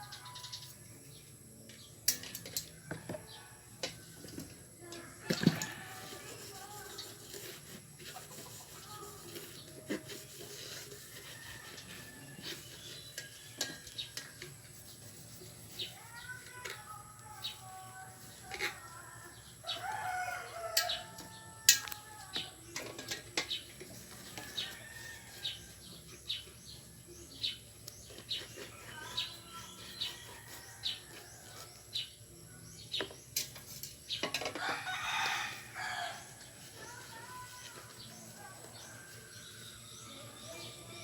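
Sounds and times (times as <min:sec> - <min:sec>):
rooster crowing: 0:19.7 - 0:22.0, 0:34.6 - 0:36.3.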